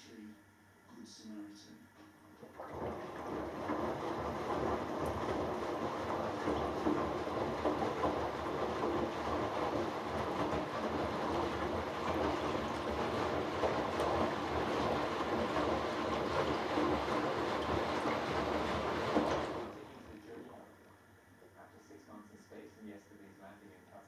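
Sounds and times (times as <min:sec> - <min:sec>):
washing machine drum rumbling and sloshing: 0:02.3 - 0:20.6.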